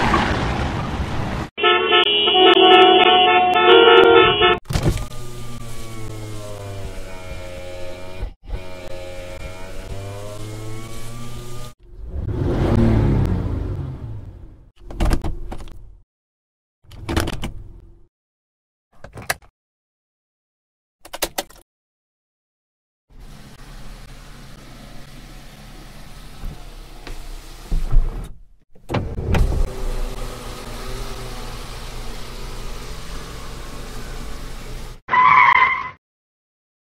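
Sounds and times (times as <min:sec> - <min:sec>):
car engine revving: 0:05.1 - 0:14.7, 0:29.4 - 0:35.0.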